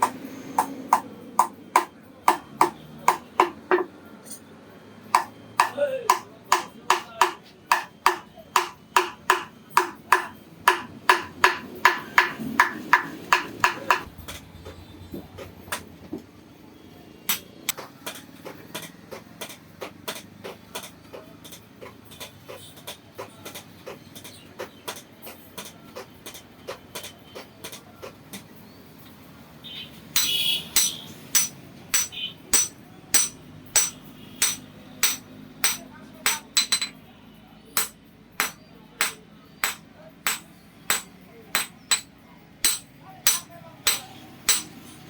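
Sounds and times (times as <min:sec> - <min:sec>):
hammer ringing on anvil: 0:30.2 - 0:37.0, 0:37.8 - 0:44.8.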